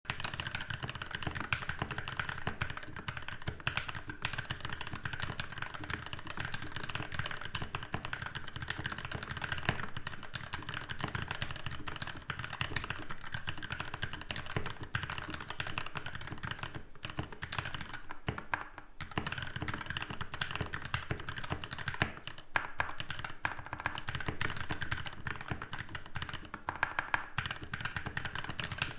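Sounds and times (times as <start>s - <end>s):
mechanical keyboard typing: 0.1s - 28.9s.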